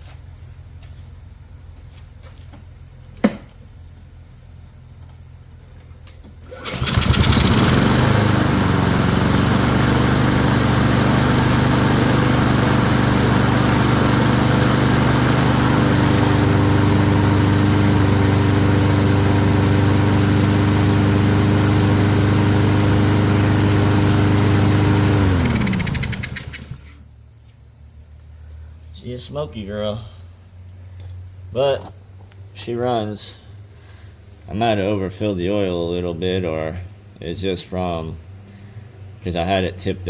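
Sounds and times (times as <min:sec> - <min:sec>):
lawn mower engine running: 0:06.3 - 0:27.0.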